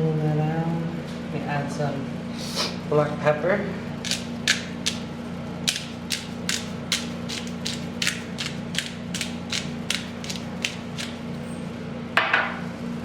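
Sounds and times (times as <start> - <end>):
pepper grinder clicking: 4.0 - 11.2.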